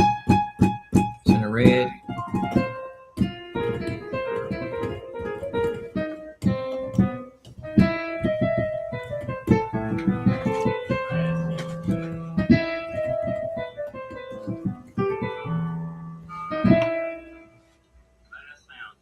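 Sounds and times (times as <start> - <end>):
piano playing: 0.0 - 17.8.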